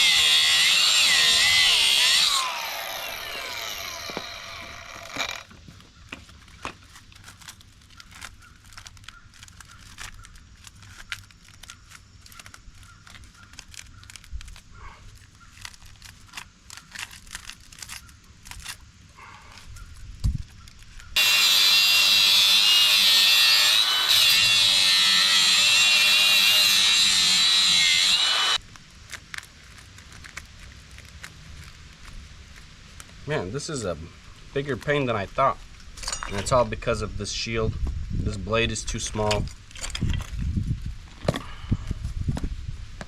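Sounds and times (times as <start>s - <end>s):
angle grinder cutting metal: 0.0s - 5.5s, 21.2s - 28.6s.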